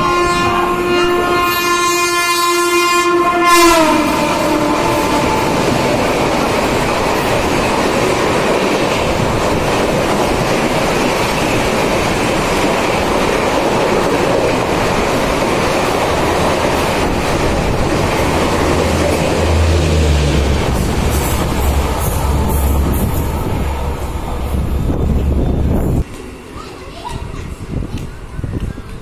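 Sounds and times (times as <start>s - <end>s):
deep train rumble: 0.0s - 29.0s
train wheels on rails: 3.6s - 29.0s
wind rushing: 4.2s - 26.1s.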